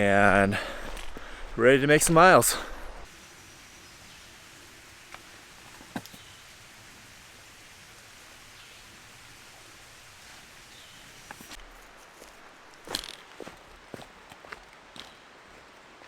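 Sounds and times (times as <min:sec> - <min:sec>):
faint outdoor hiss: 0:00.0 - 0:16.0.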